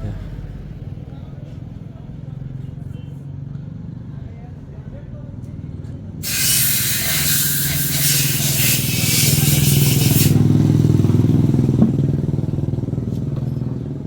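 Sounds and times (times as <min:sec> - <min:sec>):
low engine running: 0:00.0 - 0:01.9, 0:08.8 - 0:14.0
loud hiss of air spray: 0:06.2 - 0:10.5.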